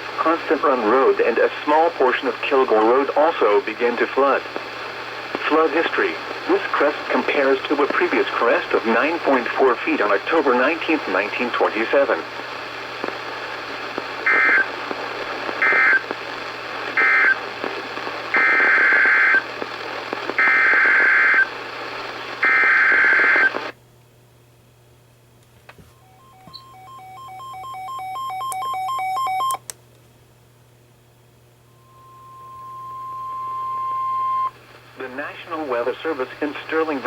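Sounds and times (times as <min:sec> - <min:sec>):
radio signal hiss: 0:00.0 - 0:23.8, 0:31.6 - 0:37.0
steady warning alarm tone: 0:25.9 - 0:29.6, 0:31.7 - 0:34.5.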